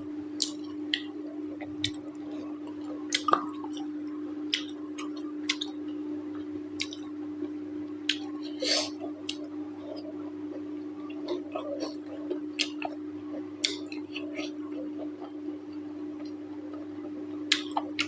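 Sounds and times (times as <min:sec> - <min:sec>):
steady low hum: 0:00.0 - 0:18.0
chewing and wet mouth smacks: 0:00.4 - 0:03.9, 0:04.5 - 0:05.8, 0:06.8 - 0:07.1, 0:08.1 - 0:08.3, 0:09.0 - 0:15.4, 0:17.5 - 0:18.0.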